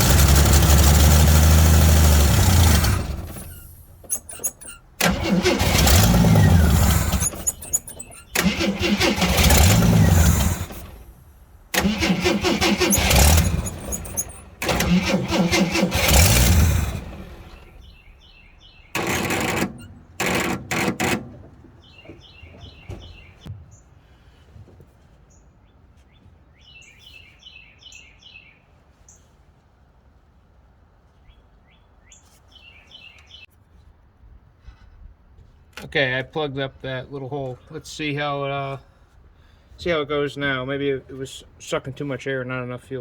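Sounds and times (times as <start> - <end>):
car engine cranking by starter: 0.0 - 23.5
birds chirping faintly: 17.4 - 19.1, 21.5 - 24.0.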